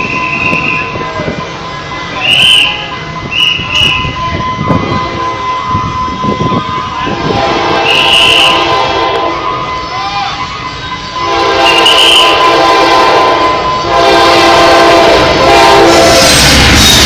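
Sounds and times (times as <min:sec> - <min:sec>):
train rumbling: 0:00.0 - 0:17.0
train horn blasts: 0:03.4 - 0:10.0, 0:11.1 - 0:16.4.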